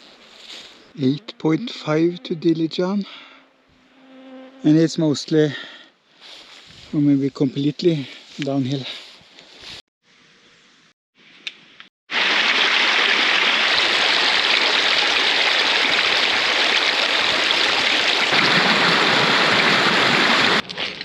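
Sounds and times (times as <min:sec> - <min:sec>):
rushing water: 0:12.1 - 0:20.6.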